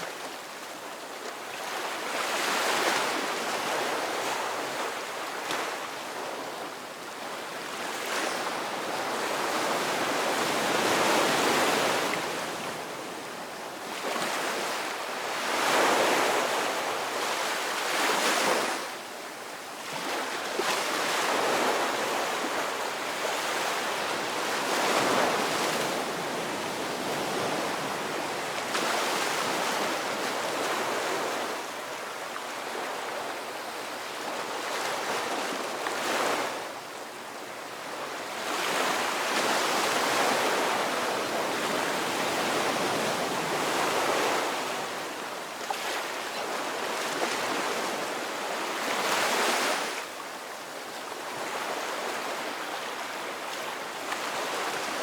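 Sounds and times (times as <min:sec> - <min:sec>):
ocean waves breaking on shore: 0:19.8 - 0:36.7.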